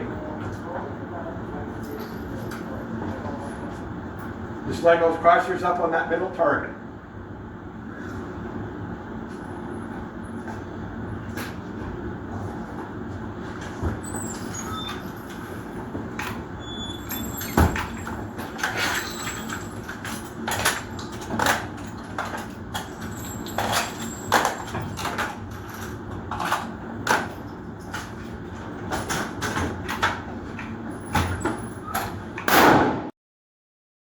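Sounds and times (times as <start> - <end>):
gunshots cracking: 32.5 - 33.1.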